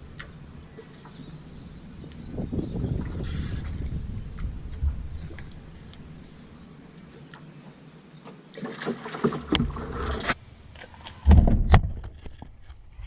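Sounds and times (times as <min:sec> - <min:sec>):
rustling in a canoe: 0:00.0 - 0:12.8
heavy low thumps: 0:02.3 - 0:06.4.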